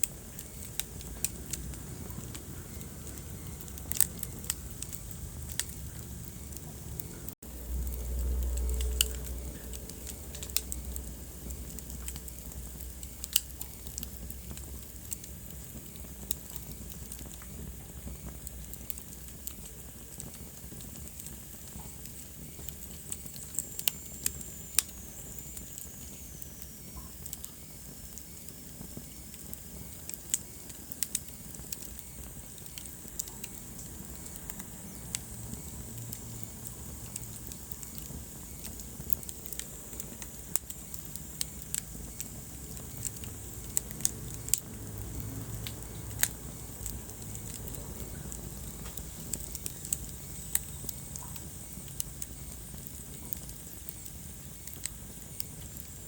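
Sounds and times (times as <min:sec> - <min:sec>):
wood fire crackling: 0:00.0 - 0:56.0
low rumble: 0:00.9 - 0:14.9.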